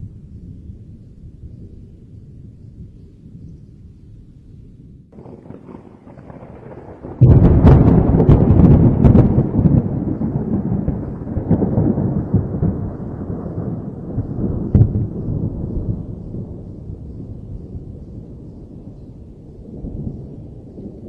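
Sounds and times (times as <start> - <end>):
thunder crack and rumble: 4.9 - 21.0.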